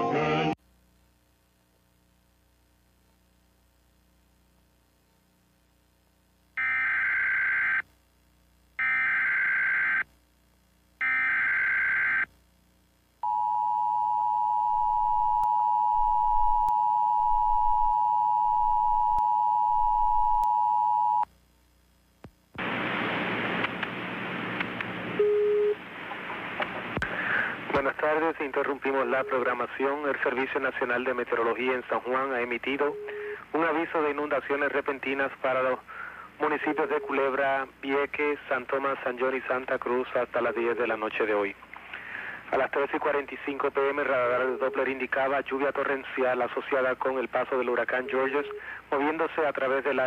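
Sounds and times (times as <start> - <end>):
low beep: 13.2 - 21.2
loud hiss: 22.6 - 24.6.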